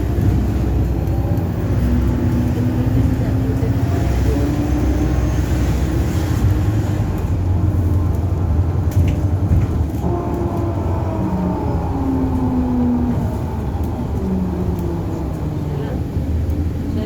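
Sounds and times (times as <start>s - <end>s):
bus engine drone: 0.0s - 17.0s
whining tones: 10.0s - 16.8s.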